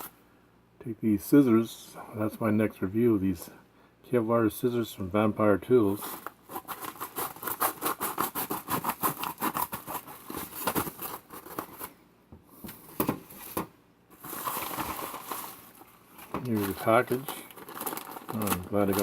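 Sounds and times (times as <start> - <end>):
packaging crinkling: 6.0 - 11.9, 13.0 - 19.0.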